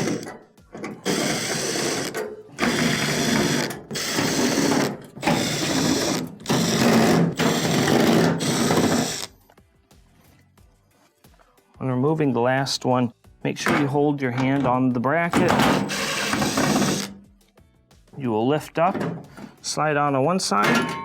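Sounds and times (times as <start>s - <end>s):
power drill backing out screws: 0.0s - 9.3s, 15.3s - 17.2s.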